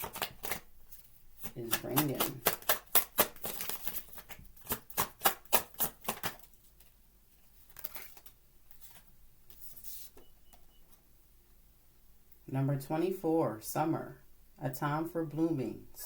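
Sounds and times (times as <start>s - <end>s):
cards being shuffled: 0.0s - 10.2s
sharp card slaps: 1.6s - 3.7s, 4.6s - 6.4s.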